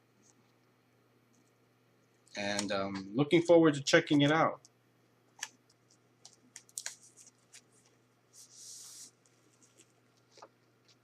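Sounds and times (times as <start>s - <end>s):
plastic packaging rustling: 5.8s - 11.0s.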